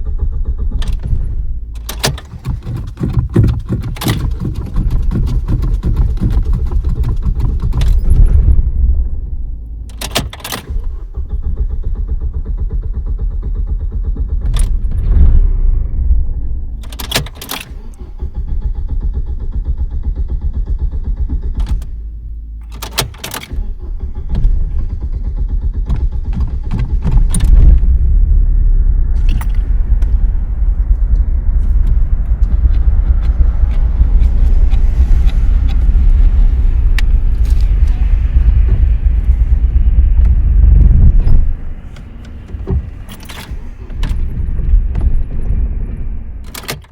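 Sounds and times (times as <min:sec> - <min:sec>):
starter motor cranking engine: 0:00.0 - 0:15.7, 0:16.7 - 0:46.9
car key clicks and jangling: 0:00.8 - 0:08.2, 0:09.9 - 0:11.0, 0:16.8 - 0:18.1, 0:21.4 - 0:24.5, 0:41.2 - 0:45.0, 0:46.4 - 0:46.9.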